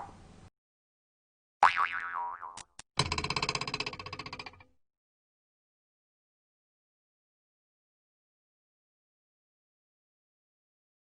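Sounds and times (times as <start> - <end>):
fast pulsing rattle effect: 3.0 - 4.7.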